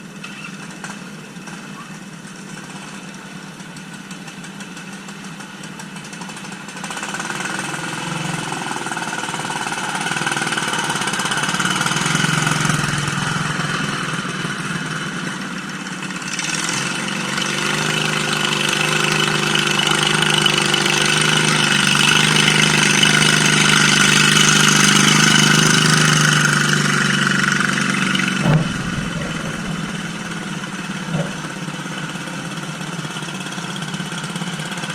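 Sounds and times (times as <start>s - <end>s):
mower engine running: 11.6s - 14.8s, 16.9s - 32.8s
short knock: 28.1s - 31.8s.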